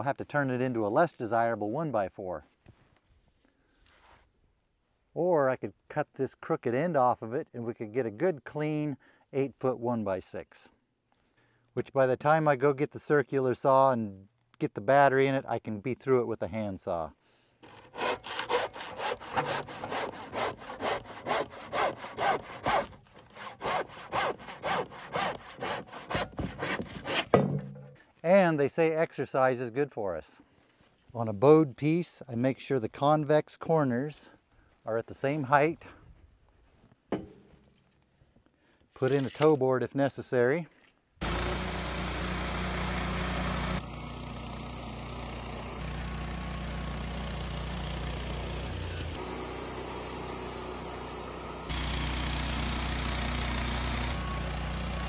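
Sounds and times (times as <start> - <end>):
sawmill running: 17.6 - 27.2, 41.2 - 55.0
handsaw cutting wood: 17.6 - 27.4, 41.2 - 55.0.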